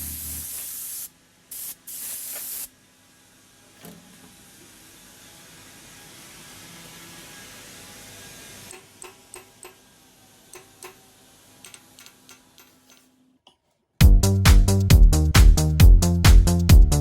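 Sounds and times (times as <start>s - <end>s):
steady hiss: 0.0s - 3.6s
electronic dance music: 14.0s - 17.0s.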